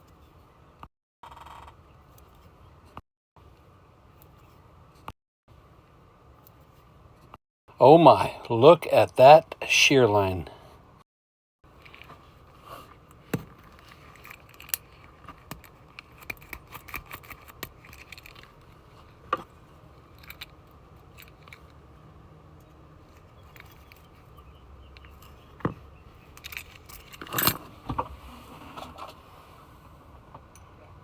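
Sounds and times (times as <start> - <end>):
metallic clicks of lock parts: 13.1 - 18.7, 20.0 - 21.8, 22.6 - 27.7.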